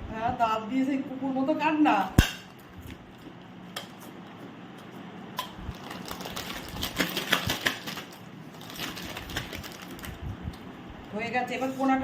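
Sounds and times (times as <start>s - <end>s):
plastic snack packet crinkling: 5.7s - 10.2s.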